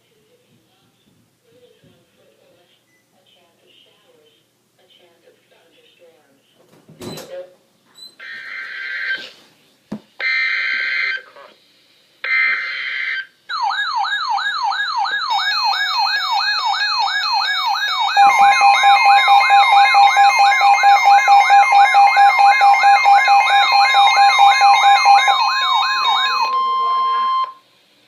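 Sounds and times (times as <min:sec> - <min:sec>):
electronic siren pitch sweep: 0:12.3 - 0:27.6
steady alert tone: 0:15.3 - 0:27.6.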